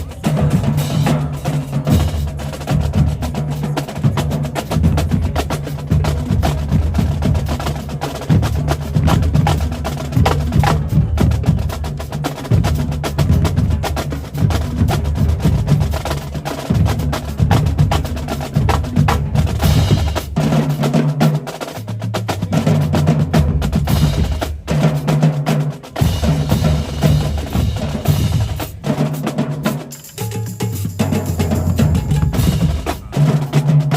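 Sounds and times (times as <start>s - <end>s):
snare drum strokes: 22.9s - 33.9s.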